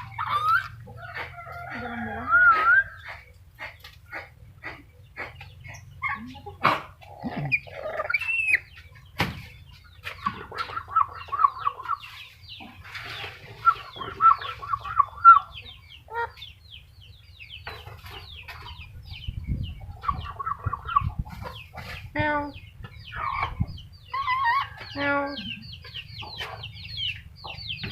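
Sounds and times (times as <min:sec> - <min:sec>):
squeaky bird chirps: 0:00.0 - 0:00.8, 0:07.5 - 0:16.6, 0:22.4 - 0:27.9
parrot clucking chatter: 0:00.0 - 0:08.8, 0:10.0 - 0:16.5, 0:19.8 - 0:27.9.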